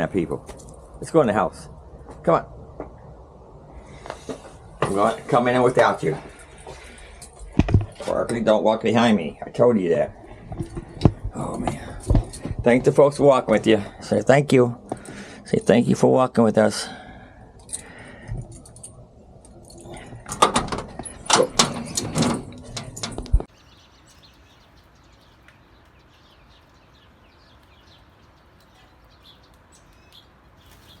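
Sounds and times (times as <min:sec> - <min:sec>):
keys jangling: 0:17.6 - 0:23.4
door knocks and handling: 0:20.3 - 0:23.5
small birds chirping: 0:23.4 - 0:31.0.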